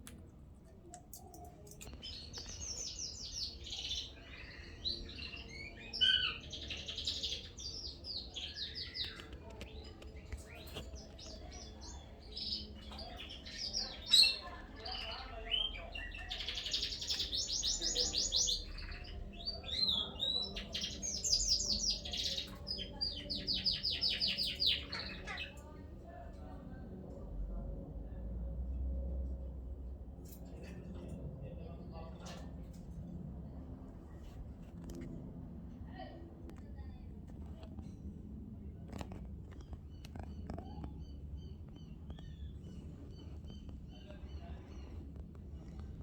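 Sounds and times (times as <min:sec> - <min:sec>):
birds chirping and trilling: 0:01.8 - 0:25.8.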